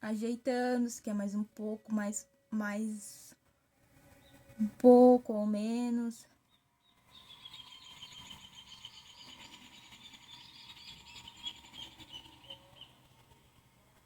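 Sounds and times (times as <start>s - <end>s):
high-pitched chirping trill: 6.5s - 13.4s.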